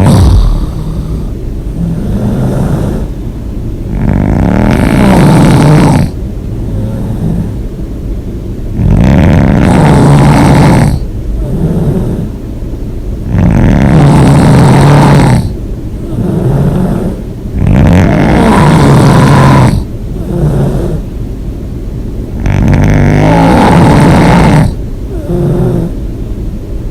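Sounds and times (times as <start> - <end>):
person snoring loudly: 0.0 - 3.2, 3.9 - 7.6, 8.8 - 12.3, 13.3 - 21.0, 22.4 - 26.0
quiet breathing: 0.0 - 3.4, 5.6 - 7.8.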